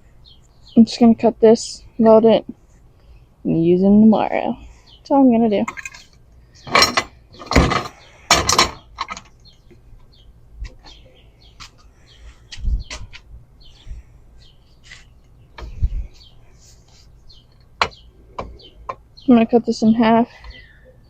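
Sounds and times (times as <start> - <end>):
birds chirping faintly: 0.0 - 21.0
metal tools knocking and clattering: 5.7 - 9.3.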